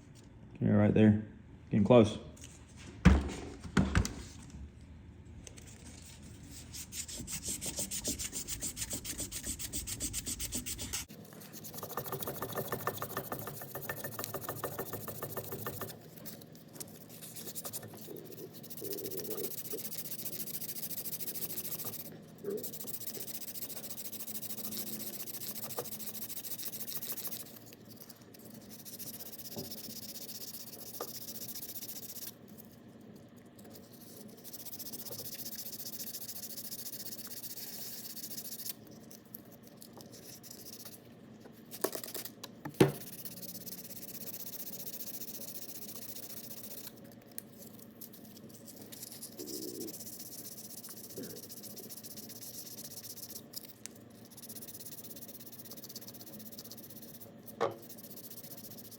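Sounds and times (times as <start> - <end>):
sandpaper rubbing on metal: 6.5 - 15.9, 17.0 - 27.5.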